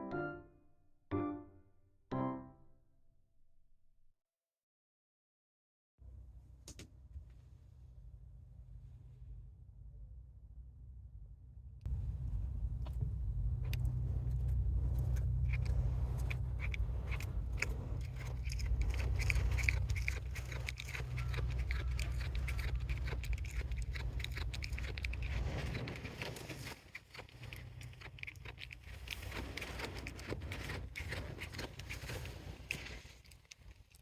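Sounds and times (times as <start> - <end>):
steady low rumble: 6.0 - 33.0
cat chewing grass: 11.9 - 34.0.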